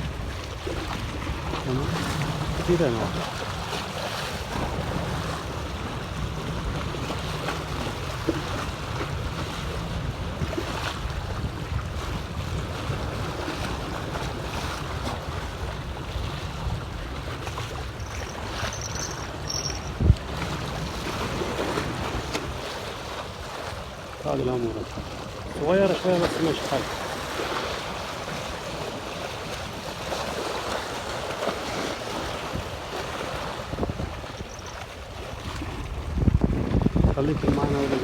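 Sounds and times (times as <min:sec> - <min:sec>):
wind on microphone: 0:00.0 - 0:23.0, 0:31.6 - 0:38.0
sea water around boat: 0:00.0 - 0:38.0.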